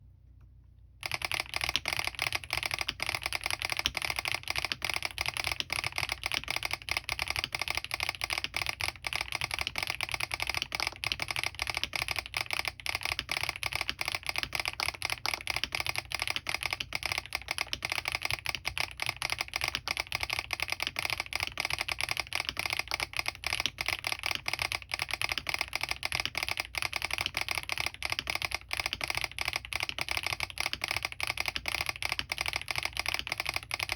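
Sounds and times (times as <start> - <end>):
fast mechanical keyboard typing: 1.0 - 33.9.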